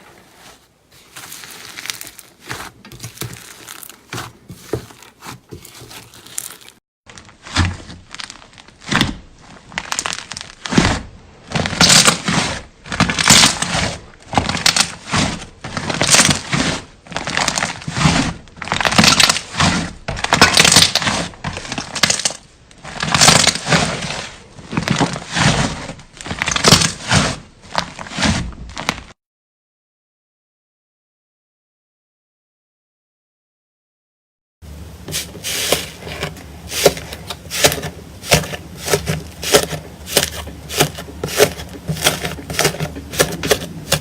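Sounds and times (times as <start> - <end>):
slime crackling and popping: 1.2 - 4.0, 6.0 - 12.2.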